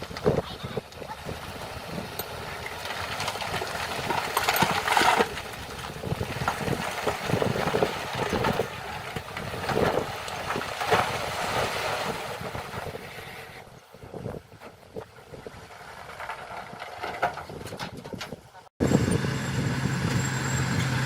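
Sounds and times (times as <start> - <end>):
diesel engine running: 18.8 - 21.0.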